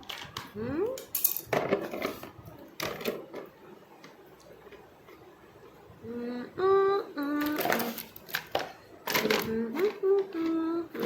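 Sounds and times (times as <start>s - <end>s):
person humming: 6.0s - 8.1s, 9.2s - 11.0s.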